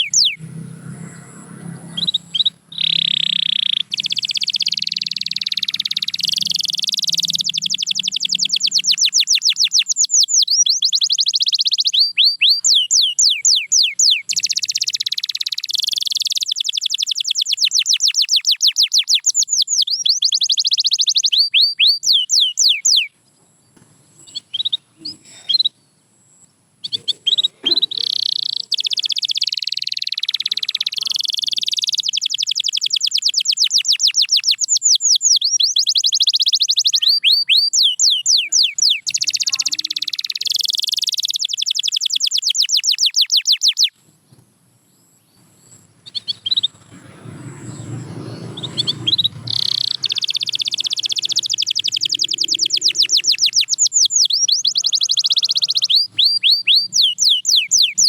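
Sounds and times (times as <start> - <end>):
canary singing trills: 0.0 - 23.3, 24.1 - 44.0, 45.0 - 58.0
low rumbling noise: 45.6 - 51.0.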